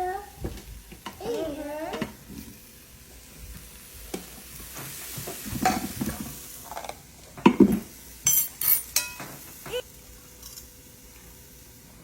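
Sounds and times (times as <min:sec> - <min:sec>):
food sizzling in a pan: 0:00.0 - 0:12.0.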